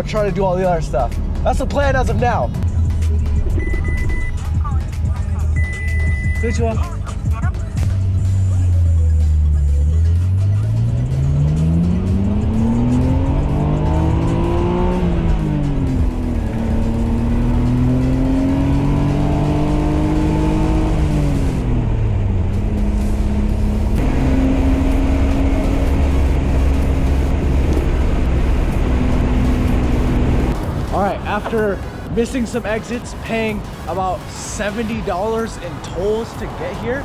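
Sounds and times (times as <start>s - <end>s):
car engine accelerating through gears: 7.7s - 37.0s.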